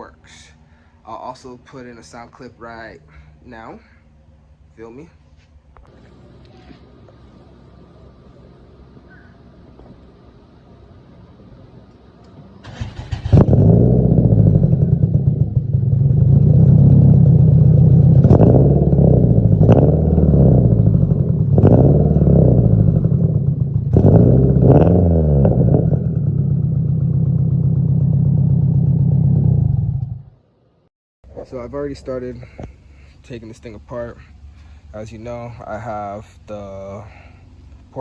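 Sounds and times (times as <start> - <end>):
car engine idling and revving: 12.0 - 30.6
car engine cranking and starting: 12.6 - 15.8.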